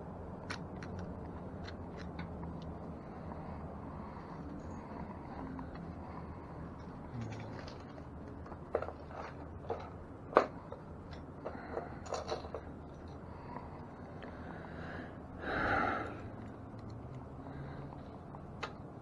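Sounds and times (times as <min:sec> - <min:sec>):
tools and metal parts clicking: 0:06.8 - 0:13.2.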